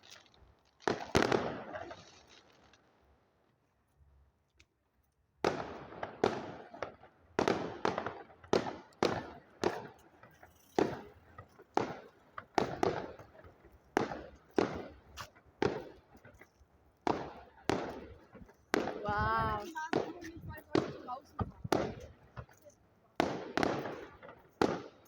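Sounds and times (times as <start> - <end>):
fireworks bangs: 0.0 - 2.8, 5.4 - 16.4, 17.0 - 25.0
person calling out: 19.0 - 19.8.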